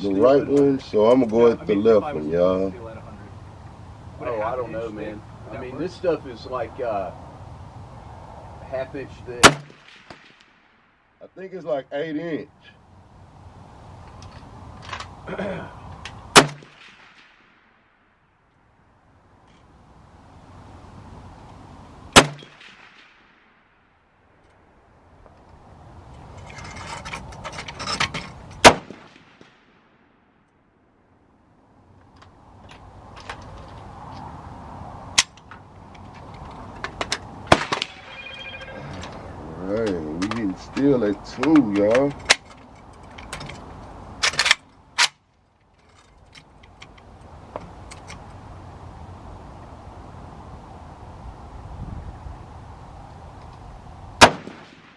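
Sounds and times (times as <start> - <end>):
steady background hiss: 0.0 - 54.9
rifle shot with echo: 9.4 - 10.9, 16.3 - 17.7, 22.2 - 23.6, 28.6 - 30.0, 37.5 - 38.4, 54.2 - 54.9.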